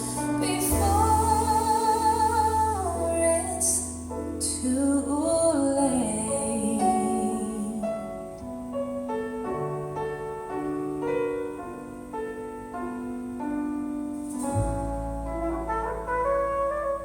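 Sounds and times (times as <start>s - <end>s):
piano notes through speakers: 0.0s - 17.0s.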